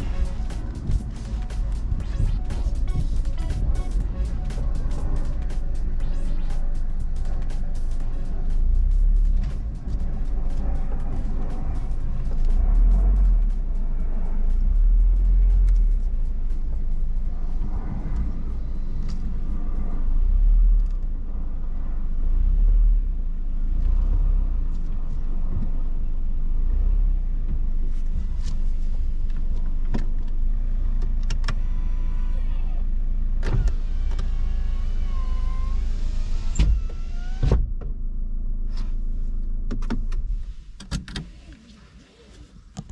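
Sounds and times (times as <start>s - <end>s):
wavering pitched sounds: 0.0s - 20.1s
car engine rumbling: 0.0s - 42.9s.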